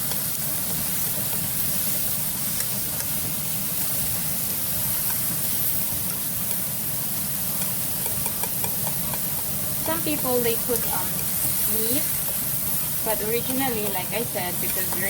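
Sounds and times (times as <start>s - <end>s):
exhaust fan hissing: 0.0s - 15.0s
vegetables sizzling in a frying pan: 0.0s - 15.0s.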